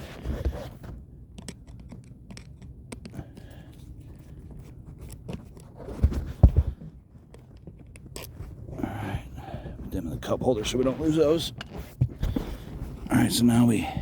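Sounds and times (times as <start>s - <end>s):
screwdriver clicks and scrapes on plastic: 0.4s - 5.8s.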